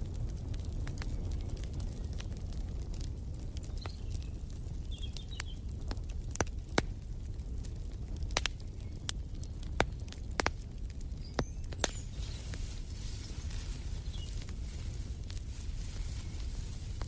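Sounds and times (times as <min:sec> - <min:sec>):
low rumble of burning: 0:00.0 - 0:17.0
wood fire crackling: 0:00.0 - 0:17.0.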